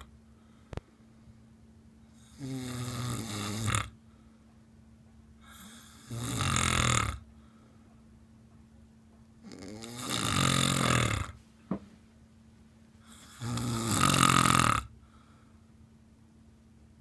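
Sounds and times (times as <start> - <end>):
quiet breathing: 0.0 - 4.8, 5.4 - 6.3, 7.2 - 8.3, 14.8 - 15.9
faint steady hum: 0.0 - 17.0
person snoring: 2.2 - 4.0, 5.4 - 7.3, 9.4 - 11.4, 13.0 - 15.0.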